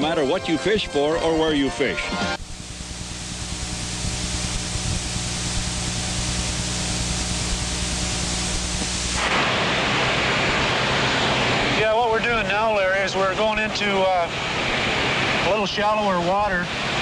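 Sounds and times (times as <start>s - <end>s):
motorboat engine hum: 2.0s - 15.6s.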